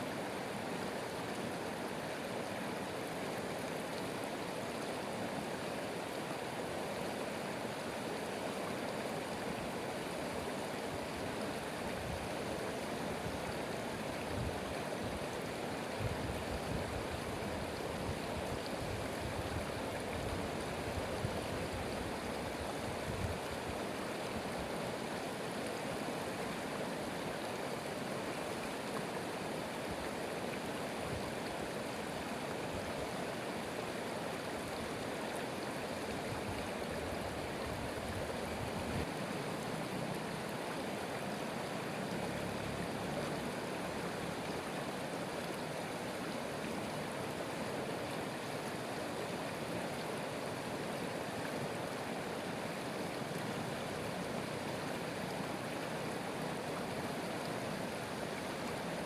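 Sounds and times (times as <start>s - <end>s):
stream water running: 0.0s - 59.0s.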